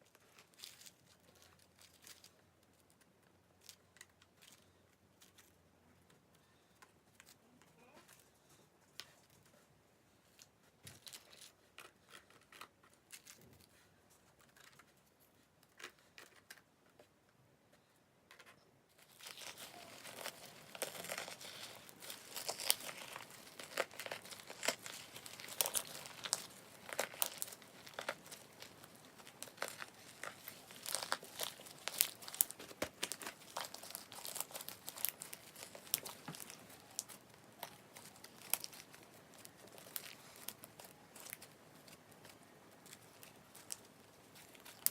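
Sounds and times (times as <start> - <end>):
snack crunching in slime: 19.1 - 42.1.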